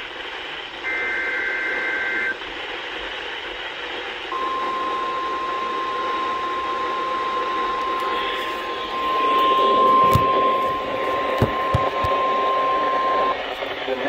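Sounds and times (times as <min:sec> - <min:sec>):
radio static hiss: 0:00.0 - 0:14.0
steady single-pitch alert tone: 0:04.4 - 0:13.4.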